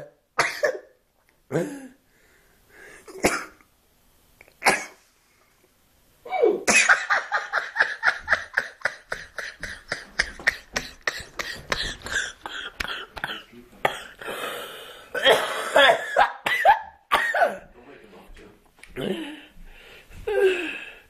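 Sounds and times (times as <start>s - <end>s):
man hiccuping: 1.5s - 2.0s, 15.1s - 17.7s.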